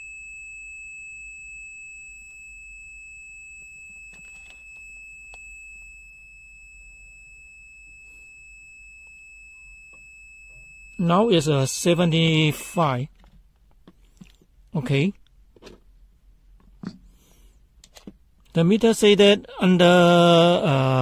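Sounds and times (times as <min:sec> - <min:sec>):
high-pitched continuity beep: 0:01.7 - 0:13.0.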